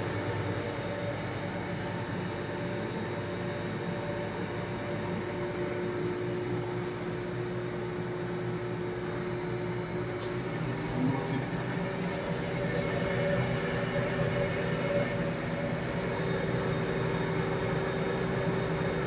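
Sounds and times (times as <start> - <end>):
machine humming and whirring: 0.0 - 19.0.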